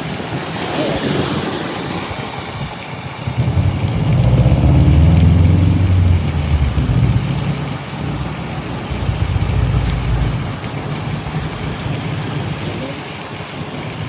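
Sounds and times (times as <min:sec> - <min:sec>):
steady traffic rushing noise: 0:03.0 - 0:13.2
vehicle engine running: 0:03.2 - 0:13.2.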